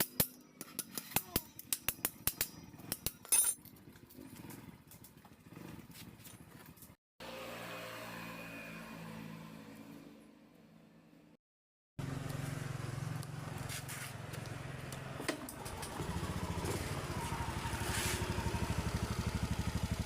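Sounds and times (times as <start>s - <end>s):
engine running: 12.0s - 20.0s.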